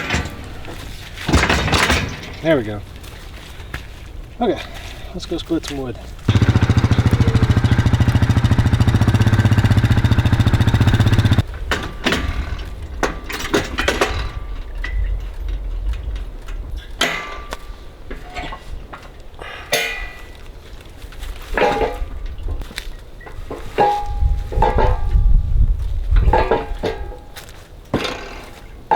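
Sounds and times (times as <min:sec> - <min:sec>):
knocks and clunks: 0:06.3 - 0:11.4
small gas engine running: 0:06.3 - 0:11.4.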